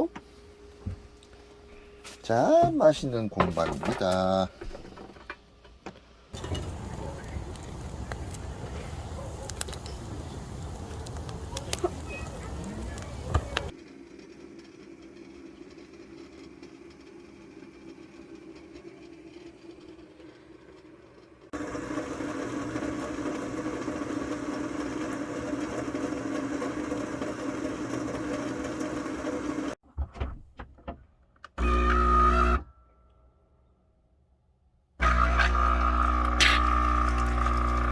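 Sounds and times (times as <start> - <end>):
small motor humming: 6.4 - 29.8, 31.6 - 32.6, 35.0 - 37.9.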